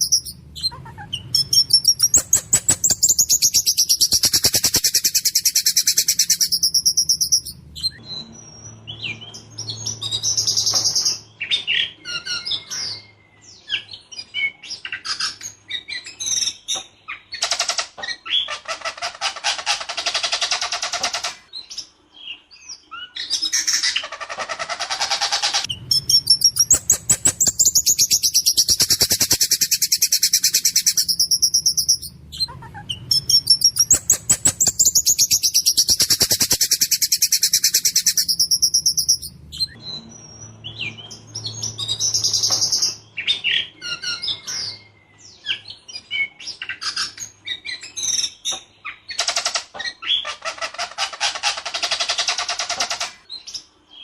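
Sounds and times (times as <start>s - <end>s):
songbird singing harshly: 0.0s - 13.1s, 25.4s - 44.9s.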